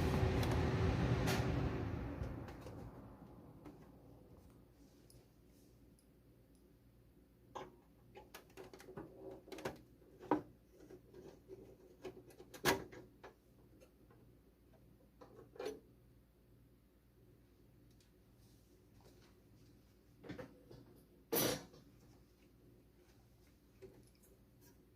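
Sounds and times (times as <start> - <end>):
faint steady hum: 0.0 - 12.4.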